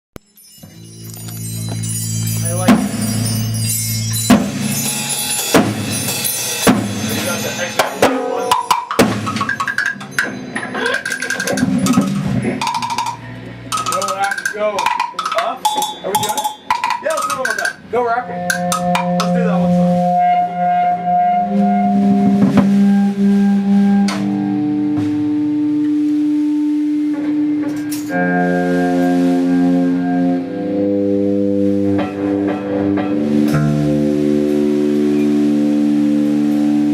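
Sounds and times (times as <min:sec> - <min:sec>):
melodic notes: 0:00.2 - 0:36.9
band playing music: 0:00.6 - 0:36.9
drum kit hits: 0:02.5 - 0:03.4, 0:04.1 - 0:20.0, 0:22.2 - 0:26.1
sustained low chords: 0:09.4 - 0:36.9.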